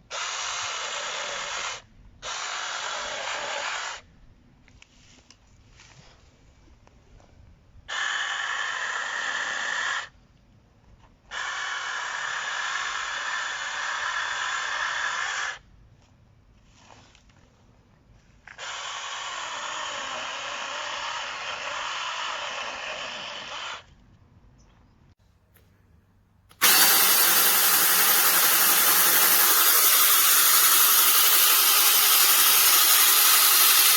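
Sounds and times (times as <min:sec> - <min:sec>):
electric chainsaw whine: 0:26.5 - 0:33.9.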